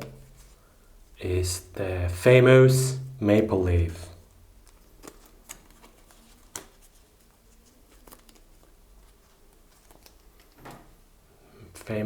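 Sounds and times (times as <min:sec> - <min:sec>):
packaging rustling: 0:04.5 - 0:11.0.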